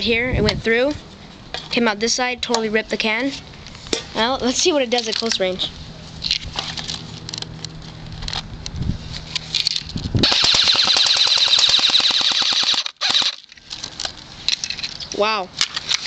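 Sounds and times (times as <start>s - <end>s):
scattered clicks: 9.6s - 13.4s
airsoft gun automatic fire: 10.2s - 13.4s.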